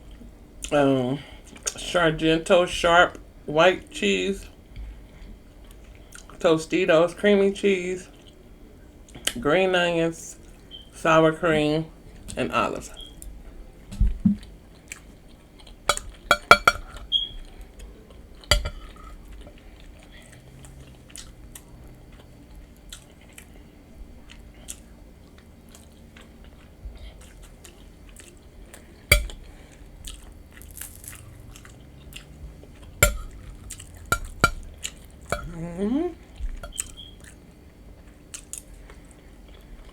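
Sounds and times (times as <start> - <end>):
wet chewing: 14.3 - 39.9
chips crunching: 30.1 - 35.1.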